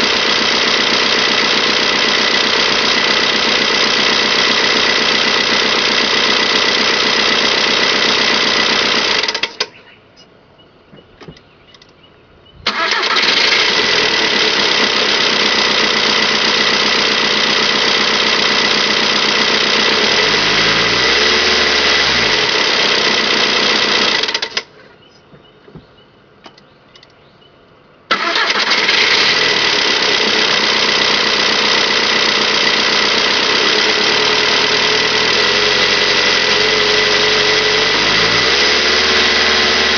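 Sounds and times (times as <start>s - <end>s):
diesel engine clatter: 0.0s - 10.0s, 12.6s - 27.3s, 28.1s - 39.9s
engine starting: 9.0s - 9.8s, 12.6s - 14.8s, 24.1s - 24.7s, 28.1s - 30.3s.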